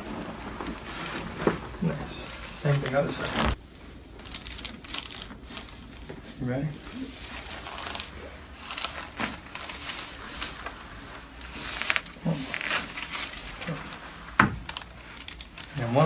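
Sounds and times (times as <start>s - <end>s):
rustling and handling noise: 0.0s - 16.0s.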